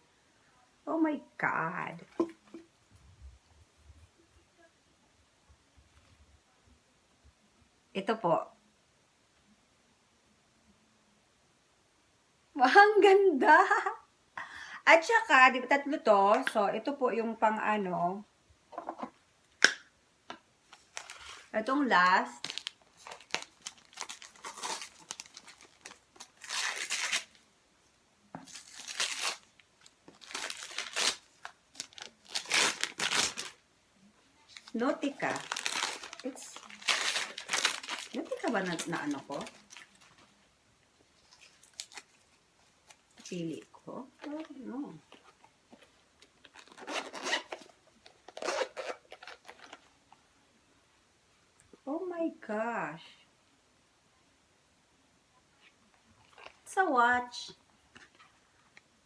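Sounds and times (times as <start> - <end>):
gift packaging tearing and rustling: 20.7 - 21.6, 22.2 - 27.4, 28.4 - 33.6, 34.5 - 40.4, 41.2 - 43.6, 45.1 - 49.9.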